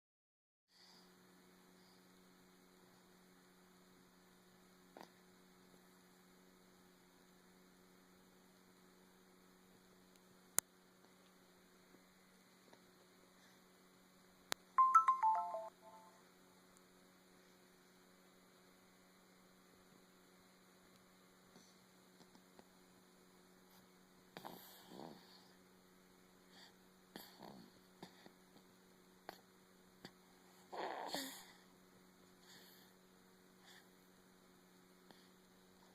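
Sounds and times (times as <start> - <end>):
falling electronic tones: 14.8 - 16.1
person snoring softly: 24.4 - 25.6.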